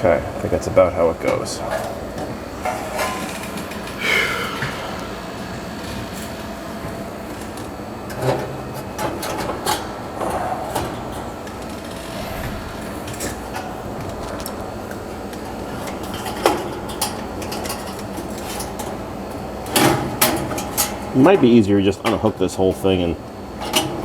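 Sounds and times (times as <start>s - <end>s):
steady low hum: 0.0s - 8.2s, 9.0s - 16.7s.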